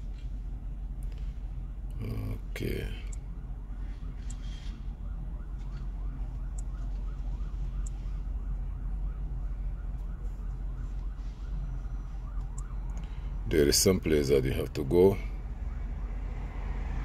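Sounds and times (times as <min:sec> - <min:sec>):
siren yelping: 0:02.0 - 0:14.0.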